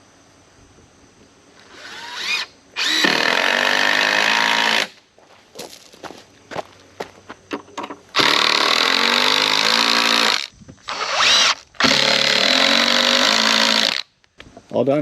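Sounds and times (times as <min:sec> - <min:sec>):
power drill driving screws into wood: 0:01.6 - 0:05.0, 0:08.1 - 0:14.1.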